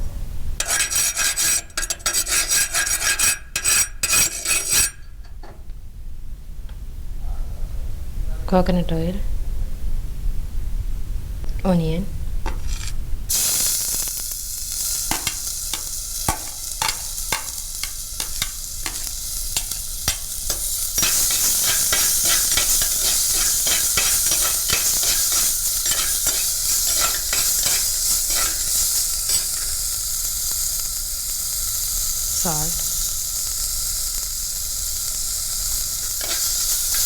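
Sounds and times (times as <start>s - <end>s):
spatula scraping a pan: 0.6s - 5.3s, 12.4s - 30.9s, 35.7s - 37.0s
onion sizzling in a pan: 0.6s - 5.4s, 12.2s - 37.0s.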